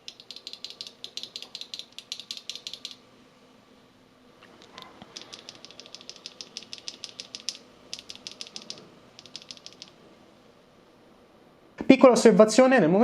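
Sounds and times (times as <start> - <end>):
mechanical keyboard key clacks: 0.0 - 3.0, 4.7 - 10.0.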